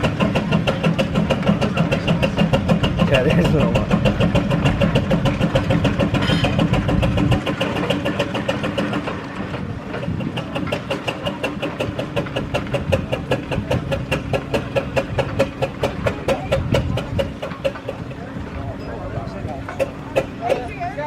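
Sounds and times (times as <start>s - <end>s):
heavy low rumble: 0.0s - 11.0s
steam roller exhaust beating: 0.0s - 21.0s.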